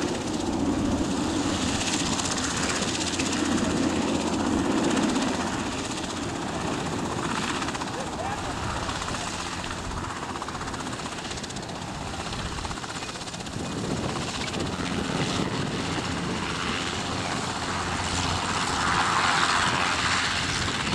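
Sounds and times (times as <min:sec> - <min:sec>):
jet bomber roaring overhead: 0:00.0 - 0:10.6.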